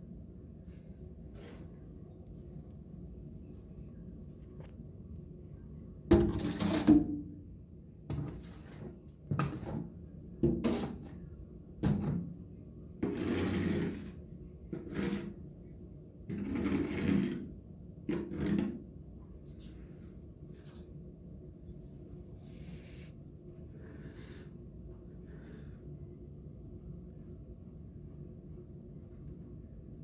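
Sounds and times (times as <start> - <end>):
steady low hum: 0.0 - 6.3, 18.8 - 30.0.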